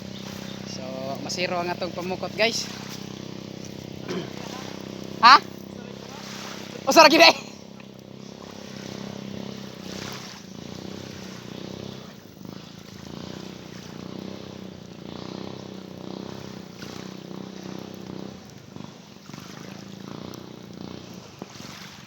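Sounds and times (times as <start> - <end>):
motorboat engine humming: 0.0 - 22.0
water noise: 0.0 - 22.0
wind: 0.0 - 22.0.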